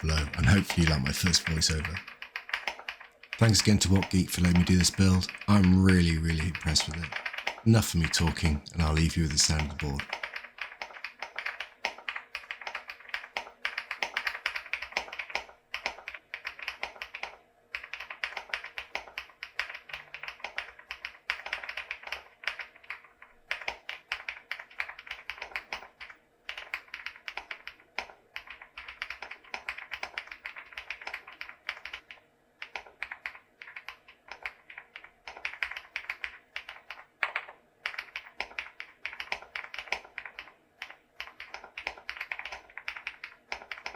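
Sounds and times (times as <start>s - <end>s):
mechanical keyboard key clacks: 9.6s - 43.9s.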